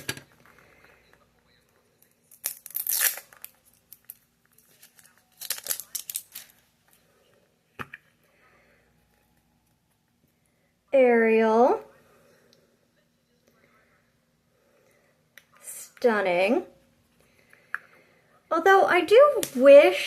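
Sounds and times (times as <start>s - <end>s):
plastic packaging tearing and crinkling: 2.3s - 6.6s.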